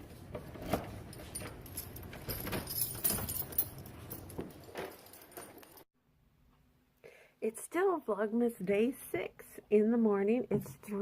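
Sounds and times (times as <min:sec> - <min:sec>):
keys clinking: 0:01.0 - 0:05.9.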